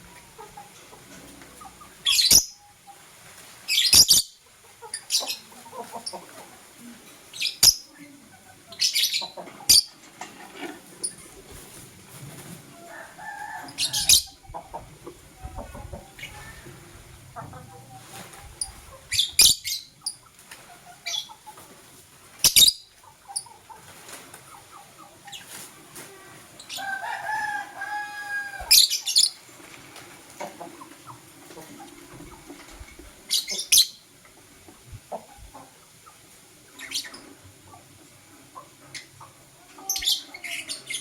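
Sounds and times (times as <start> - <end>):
lovebirds calling shrilly: 1.6 - 3.0, 3.7 - 6.2, 7.3 - 8.0, 8.7 - 10.0, 13.4 - 14.5, 18.1 - 20.3, 20.9 - 21.4, 22.4 - 23.6, 26.6 - 29.4, 33.3 - 34.1, 36.8 - 37.3, 39.8 - 41.0.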